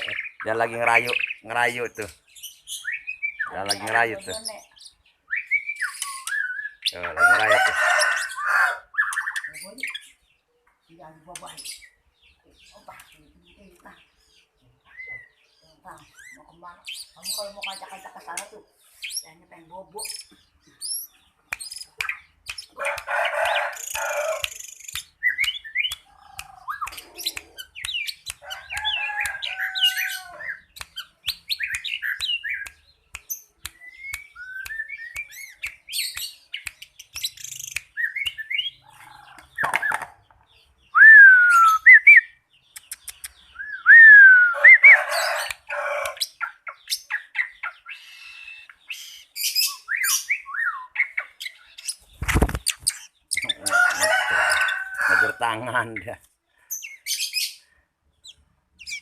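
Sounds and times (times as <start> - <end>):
harsh rasping bird calls: 0.0 - 10.3, 14.8 - 59.0
bird whistles and chirps: 5.3 - 7.0, 33.2 - 36.4, 40.9 - 45.5, 46.8 - 53.6
bird sharp clicks: 21.5 - 29.5, 30.7 - 38.6, 42.7 - 43.4, 51.8 - 54.0.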